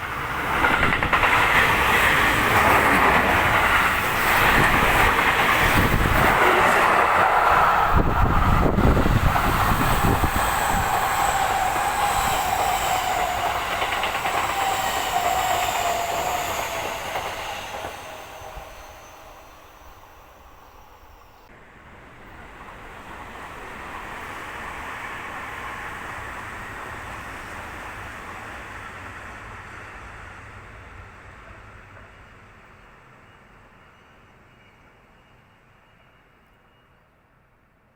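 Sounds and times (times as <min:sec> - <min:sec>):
wheels clattering on rails: 0:00.1 - 0:18.6
train motor whine: 0:07.4 - 0:21.5.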